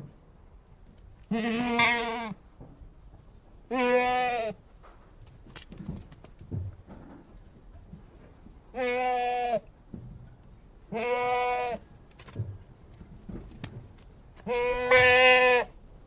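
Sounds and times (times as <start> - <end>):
goat bleating: 1.3 - 2.4, 3.7 - 4.6, 8.7 - 9.7, 10.9 - 11.9, 14.4 - 15.8.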